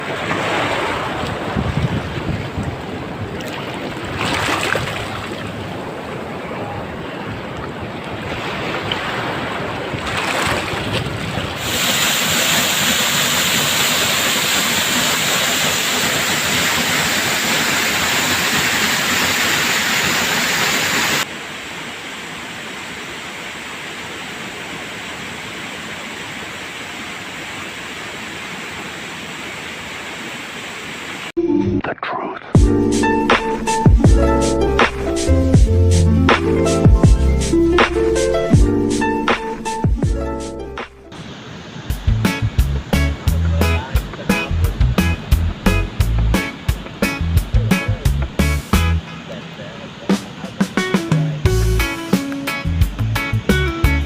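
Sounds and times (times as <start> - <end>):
surf and rushing water: 0.0 - 31.4, 32.0 - 54.0
wind buffeting microphone: 0.8 - 13.1.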